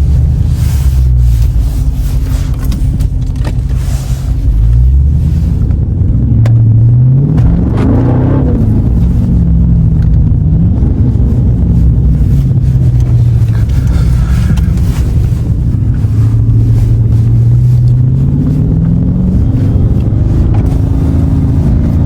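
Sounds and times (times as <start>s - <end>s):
car exhaust drone: 0.0s - 22.0s.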